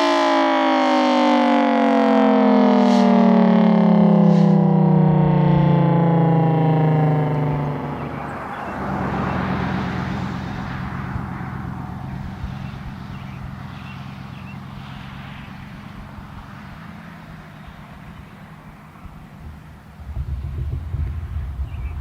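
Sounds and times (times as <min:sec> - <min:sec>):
siren falling tone: 0:00.0 - 0:22.0
road hiss: 0:02.9 - 0:03.2, 0:04.2 - 0:04.6, 0:08.0 - 0:22.0
vehicle engine hum: 0:02.9 - 0:22.0.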